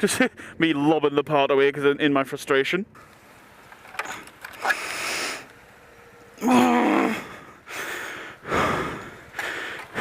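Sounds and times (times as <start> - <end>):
man groaning: 6.4 - 7.5
man gasping breaths: 6.9 - 10.0.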